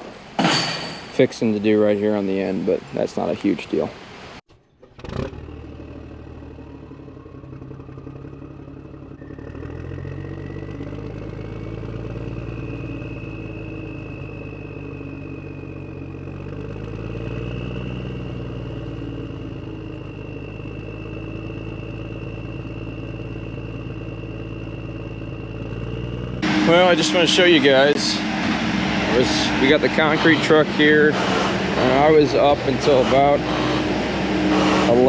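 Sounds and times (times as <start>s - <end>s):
concrete pump truck engine whining: 0.0s - 35.0s.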